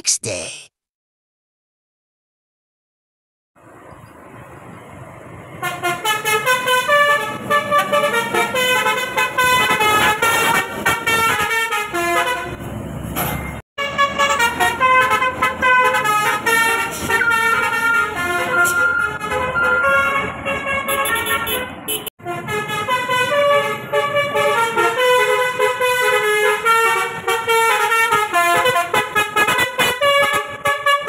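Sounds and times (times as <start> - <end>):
truck horn playing a melody: 5.6 - 12.6, 13.8 - 31.0.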